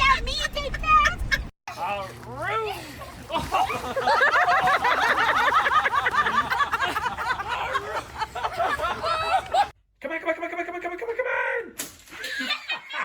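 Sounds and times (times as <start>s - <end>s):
people laughing: 2.8s - 9.7s, 12.2s - 13.0s.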